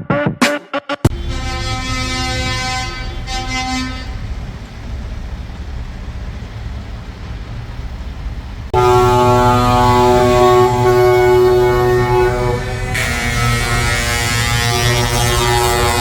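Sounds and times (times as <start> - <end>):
loud horn blast: 1.0 - 4.9, 8.7 - 16.0
vehicle horns honking: 1.1 - 4.6, 8.7 - 16.0
low engine rumble: 1.1 - 16.0.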